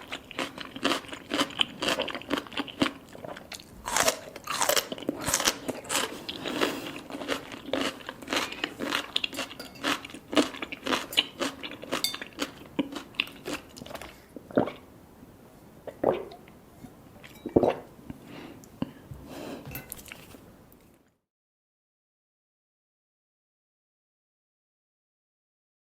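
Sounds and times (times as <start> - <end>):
person chewing crunchy food: 0.0 - 14.9.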